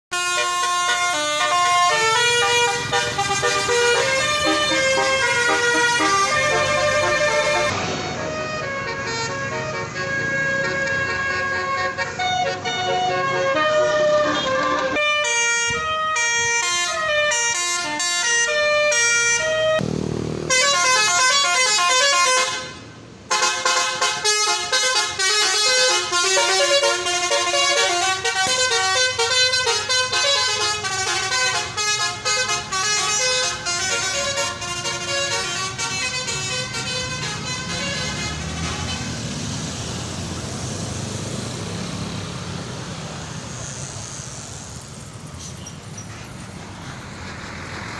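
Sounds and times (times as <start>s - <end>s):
multi-tone bus horn melody: 0.1s - 44.1s
vehicle and street noise: 0.1s - 47.9s.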